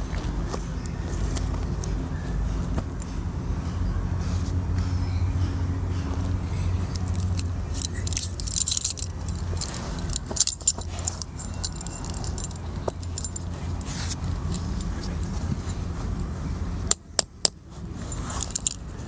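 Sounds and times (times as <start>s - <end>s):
steady low hum: 0.0s - 19.0s
small metal objects jingling: 6.9s - 15.8s, 18.0s - 19.0s.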